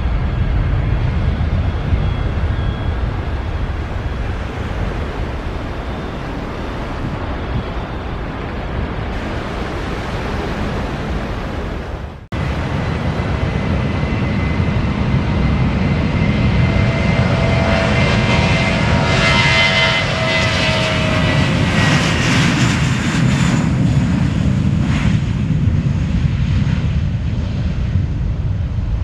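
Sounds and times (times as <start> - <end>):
high engine whine: 0.0 - 25.9
airliner engines: 0.0 - 29.0
loud rushing noise: 3.1 - 14.0.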